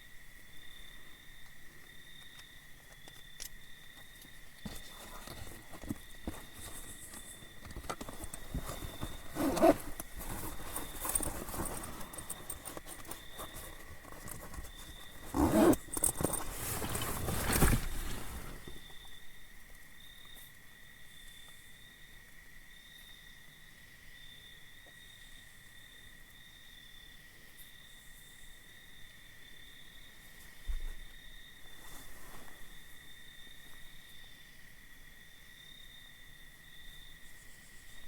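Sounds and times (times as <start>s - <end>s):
night insects chirping: 0.0s - 38.0s
rustling and handling noise: 2.8s - 19.0s, 31.6s - 33.0s.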